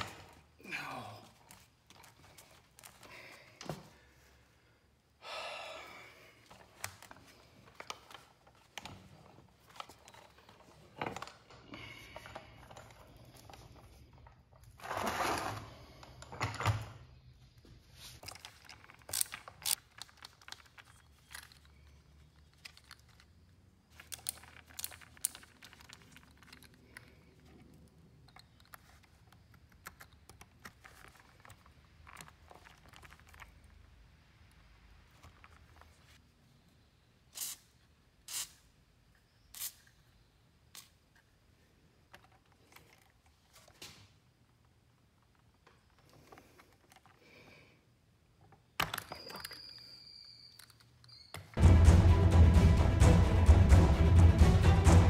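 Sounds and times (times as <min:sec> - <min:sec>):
small hard objects clicking: 0:18.2 - 0:35.6.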